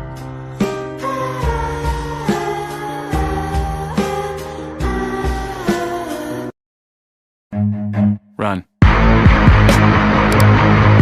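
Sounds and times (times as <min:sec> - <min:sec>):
loud music: 0:08.8 - 0:11.0.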